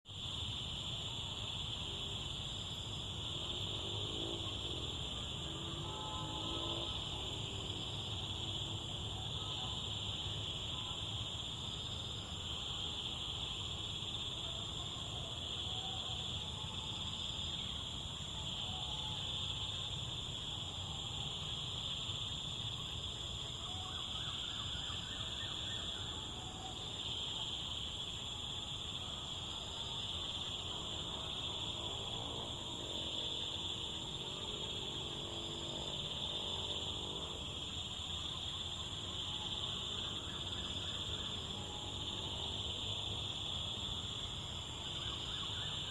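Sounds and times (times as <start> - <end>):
insects droning: 0.1 - 45.9.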